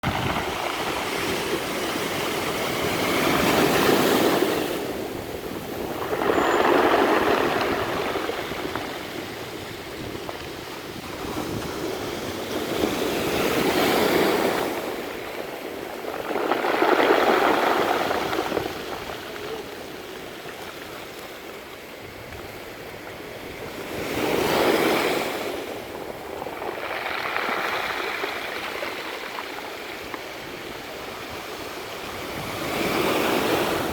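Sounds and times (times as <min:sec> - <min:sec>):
waves on pebble beach: 0:00.0 - 0:33.9
pebbles rattling and hissing: 0:00.1 - 0:11.6, 0:12.7 - 0:21.3, 0:25.3 - 0:31.3.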